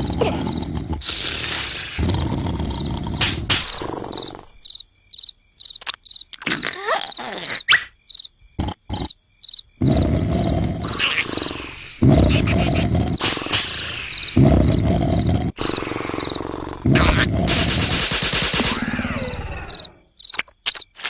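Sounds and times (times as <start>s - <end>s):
person snoring loudly: 0.0s - 4.5s, 9.8s - 17.6s
cricket chirping: 0.0s - 21.0s
sharp clicks: 19.7s - 21.0s.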